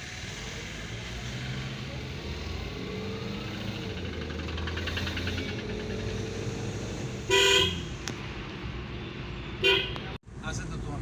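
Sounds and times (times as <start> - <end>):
vehicle engines running: 0.0 - 8.9
vehicle horn honk: 7.3 - 7.9, 9.6 - 10.2.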